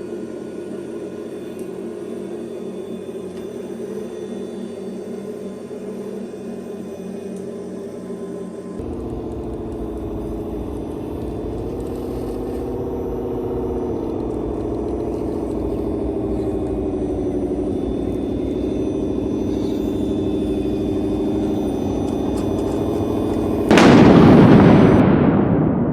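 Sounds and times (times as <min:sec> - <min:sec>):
electric motor whining: 0:00.0 - 0:25.0
sudden loud burst of noise: 0:08.8 - 0:25.9.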